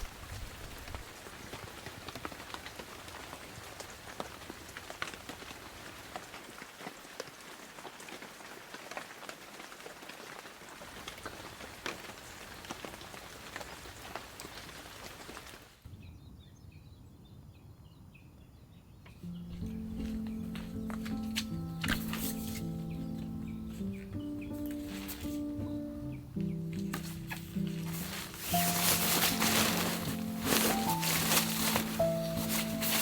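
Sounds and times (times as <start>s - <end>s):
rain drops pattering: 0.0s - 15.9s, 22.9s - 33.0s
music: 19.1s - 33.0s.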